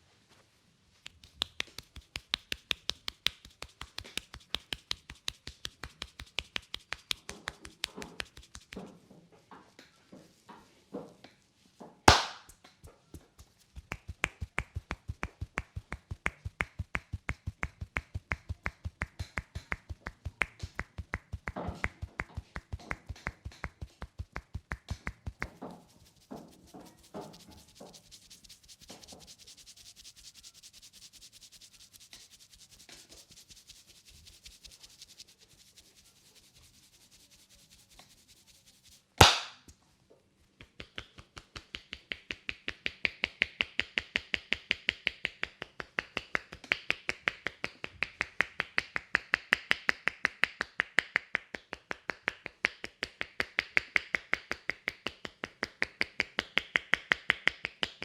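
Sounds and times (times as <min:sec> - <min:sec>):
hands rubbing scalp and hair: 0:00.3 - 0:09.1, 0:12.1 - 0:39.6, 0:40.5 - 0:58.0
fast tapping on head: 0:01.1 - 0:09.0, 0:12.1 - 0:35.7, 0:38.8 - 0:39.6, 0:40.5 - 0:58.0
loud sharp crack: 0:12.1 - 0:12.5, 0:39.2 - 0:39.6.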